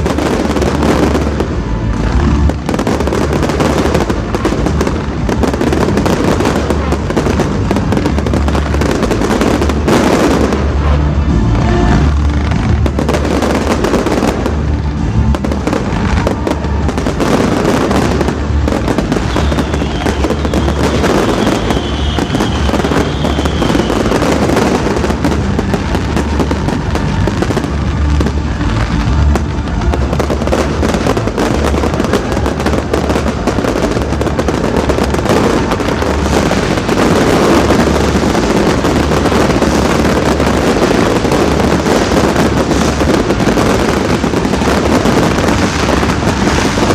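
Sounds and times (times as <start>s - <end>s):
firework whistle: 0.0s - 46.9s
fireworks bangs and crackling: 0.0s - 46.9s.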